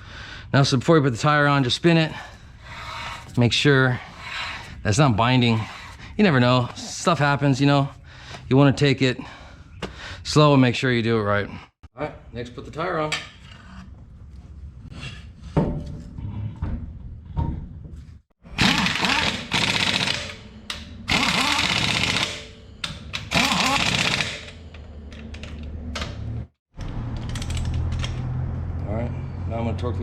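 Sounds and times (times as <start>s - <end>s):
impact wrench hammering: 18.5s - 24.6s.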